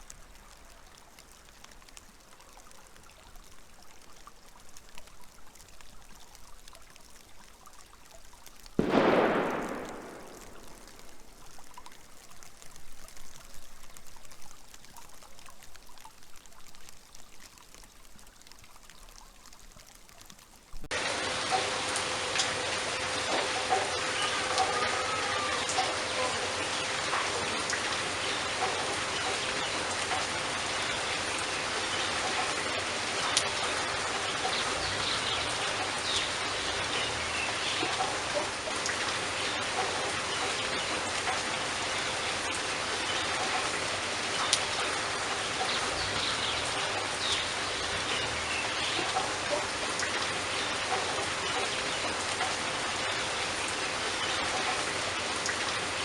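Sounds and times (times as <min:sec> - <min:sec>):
rain falling on leaves: 0:00.0 - 0:56.0
single water drops: 0:08.8 - 0:12.0.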